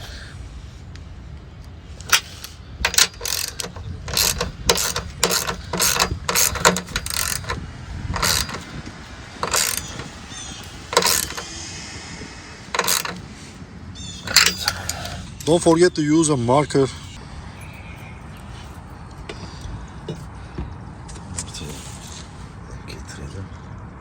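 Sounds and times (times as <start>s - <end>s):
ratchet wrench clicking: 2.0s - 11.6s, 12.7s - 13.5s, 14.2s - 15.6s.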